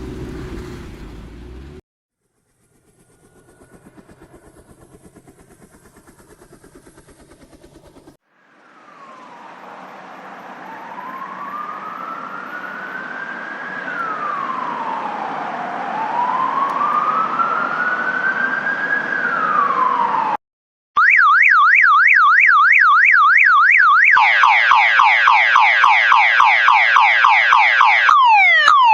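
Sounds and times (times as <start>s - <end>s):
emergency siren wailing: 8.5s - 20.4s, 21.0s - 28.9s
electronic alarm warbling: 21.0s - 28.9s.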